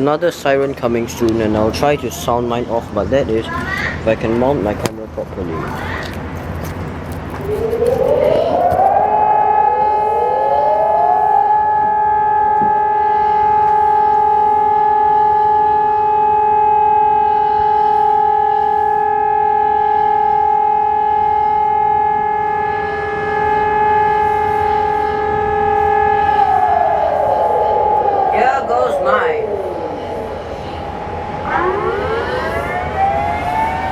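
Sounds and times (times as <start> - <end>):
electronic sirens steady tone: 7.3 - 33.9.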